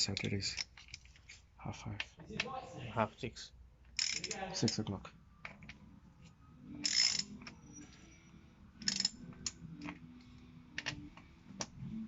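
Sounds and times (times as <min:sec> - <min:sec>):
ratchet wrench clicking: 0:04.0 - 0:04.8, 0:06.8 - 0:07.5, 0:08.8 - 0:09.9.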